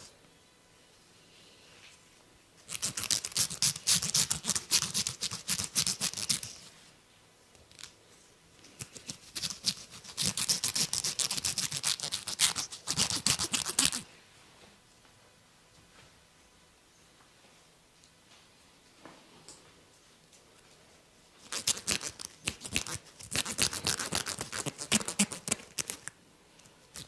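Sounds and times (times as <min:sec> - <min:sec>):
scratching hair and scalp: 0:02.7 - 0:06.8, 0:08.7 - 0:14.0, 0:21.4 - 0:26.1.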